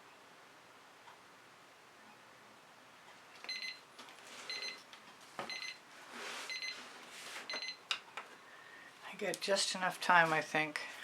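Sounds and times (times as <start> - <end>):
electronic alarm beeping: 3.5 - 3.8, 4.5 - 4.8, 5.5 - 5.8, 6.5 - 6.8, 7.5 - 7.8.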